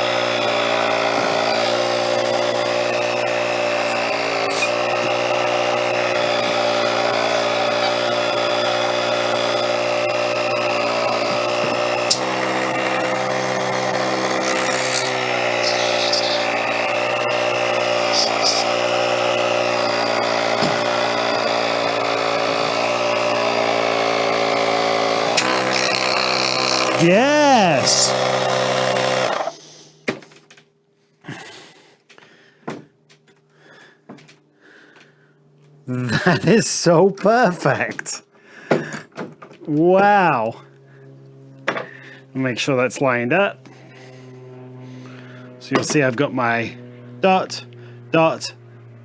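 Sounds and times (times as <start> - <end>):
electric air pump humming: 0.0 - 30.2, 43.6 - 49.0.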